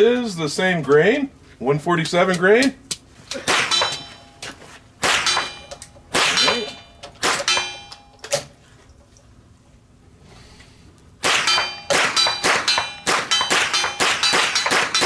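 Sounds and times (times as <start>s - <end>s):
metal clanging on metal: 2.0s - 8.6s, 11.3s - 15.0s.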